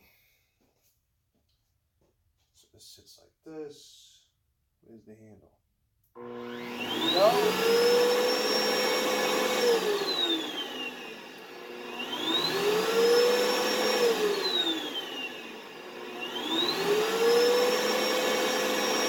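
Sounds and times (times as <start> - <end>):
vacuum cleaner motor whining: 6.2 - 19.0.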